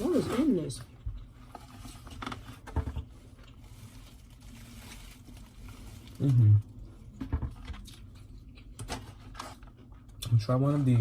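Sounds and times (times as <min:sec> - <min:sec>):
low voiced hum: 0:06.0 - 0:07.1.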